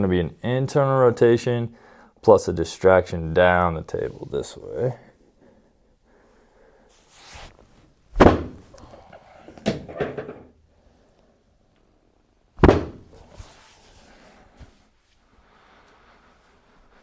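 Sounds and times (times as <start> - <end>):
rustling: 6.9 - 8.8, 12.6 - 17.0
heavy thuds on table: 8.2 - 8.7, 12.6 - 13.2.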